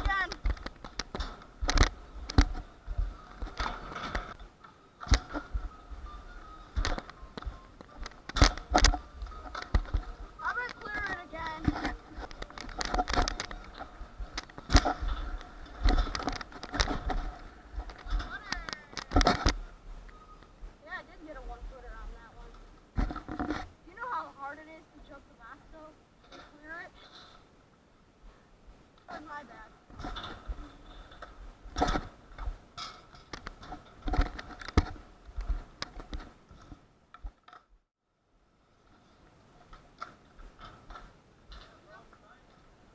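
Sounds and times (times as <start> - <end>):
small wheels rolling on concrete: 0.0 - 20.2, 28.9 - 37.7.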